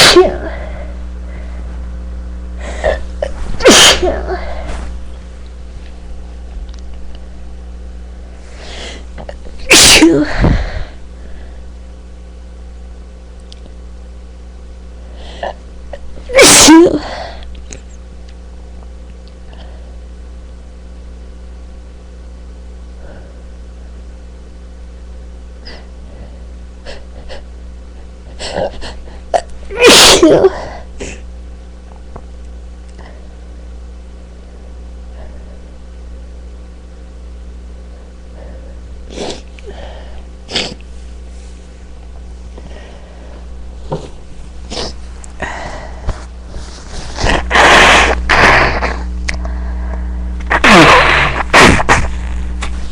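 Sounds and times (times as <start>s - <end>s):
person sneezing: 0.0s - 1.0s, 2.6s - 4.9s, 8.6s - 11.0s, 16.3s - 17.4s, 26.8s - 27.5s, 28.3s - 31.2s, 38.4s - 40.8s, 44.7s - 49.4s, 50.5s - 52.3s
steady low hum: 0.0s - 52.9s.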